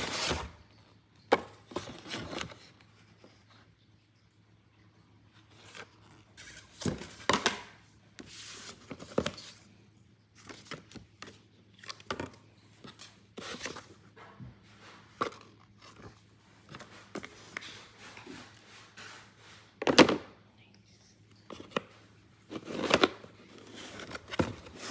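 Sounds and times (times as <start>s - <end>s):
cardboard box and paper handled: 0.0s - 0.6s, 1.3s - 3.6s, 5.5s - 7.6s, 8.2s - 9.7s, 10.4s - 14.0s, 14.7s - 20.0s, 21.5s - 24.9s.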